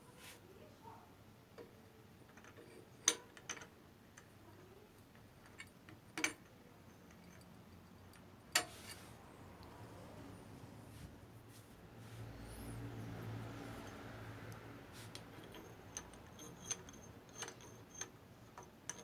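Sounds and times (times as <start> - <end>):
small hard parts clicking: 13.8 - 19.0.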